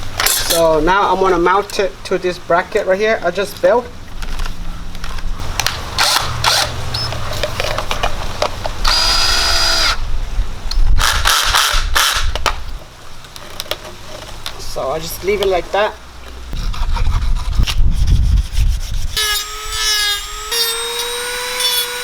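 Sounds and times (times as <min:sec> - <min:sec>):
power drill running: 0:06.0 - 0:07.2, 0:08.8 - 0:10.0, 0:19.2 - 0:22.0.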